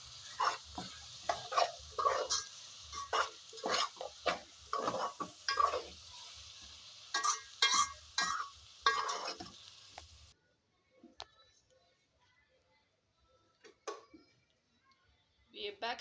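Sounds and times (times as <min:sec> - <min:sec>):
utensil scraping meat in pot: 0:00.0 - 0:10.3
meat sizzling: 0:00.0 - 0:10.4.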